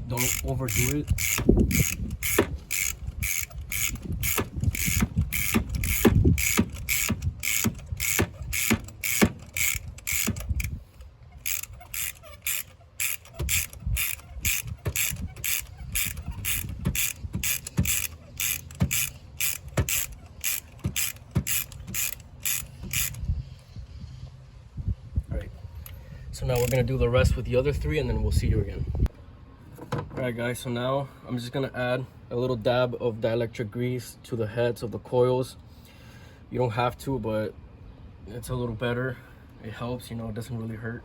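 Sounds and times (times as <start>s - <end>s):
socket ratchet clicking: 0.0s - 23.3s, 26.6s - 26.8s.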